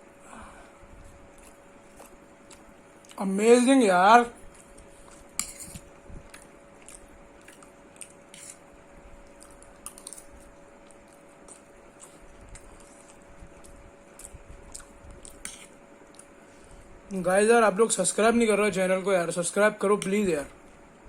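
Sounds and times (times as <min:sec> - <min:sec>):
person chewing food: 0:01.0 - 0:03.2, 0:04.4 - 0:16.9.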